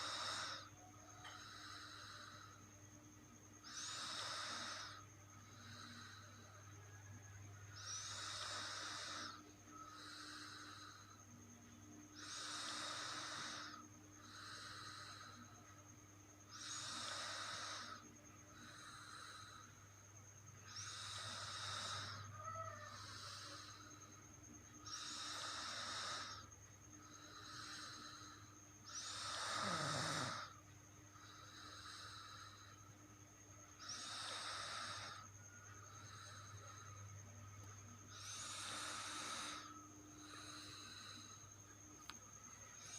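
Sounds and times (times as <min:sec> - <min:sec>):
soft breath: 0:00.0 - 0:42.9
person snoring: 0:03.6 - 0:06.5, 0:07.8 - 0:11.2, 0:12.2 - 0:15.5, 0:16.5 - 0:18.0, 0:20.7 - 0:23.9, 0:24.8 - 0:26.5, 0:27.1 - 0:32.8, 0:33.8 - 0:36.9, 0:38.0 - 0:41.6.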